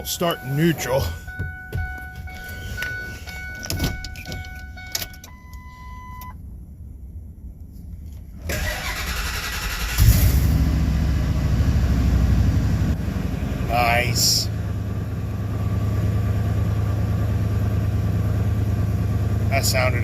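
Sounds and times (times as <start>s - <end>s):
electronic warning chime: 0.0s - 6.3s
engine running steadily: 0.0s - 20.0s.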